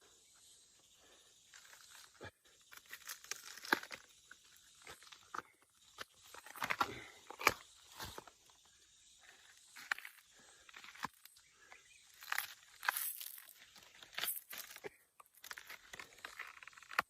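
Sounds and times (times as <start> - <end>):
plant material rustling and crunching: 1.5 - 8.3, 12.1 - 17.0.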